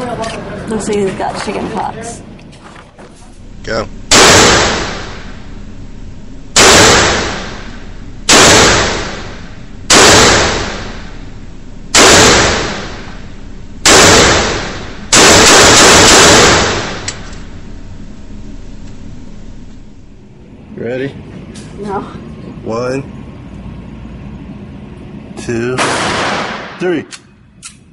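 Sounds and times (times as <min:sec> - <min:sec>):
sustained blast: 0:03.4 - 0:20.4
gunshots with echo: 0:04.1 - 0:05.3, 0:06.6 - 0:11.2, 0:11.9 - 0:13.2, 0:13.8 - 0:17.2, 0:25.8 - 0:26.8.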